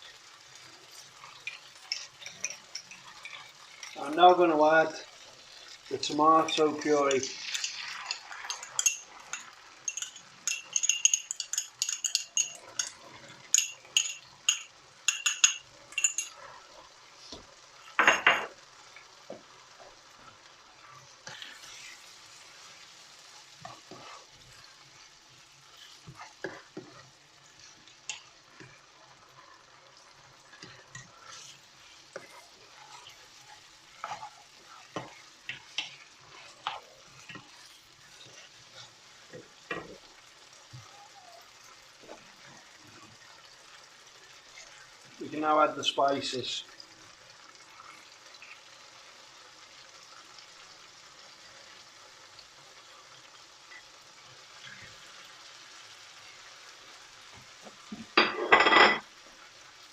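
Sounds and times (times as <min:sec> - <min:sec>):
food sizzling in a pan: 0:00.0 - 0:59.9
utensil clinking against pan: 0:07.2 - 0:16.4.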